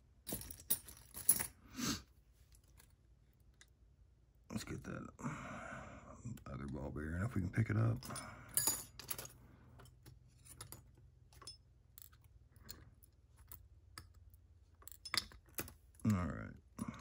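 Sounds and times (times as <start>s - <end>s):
small metal parts clicking: 8.0s - 16.2s.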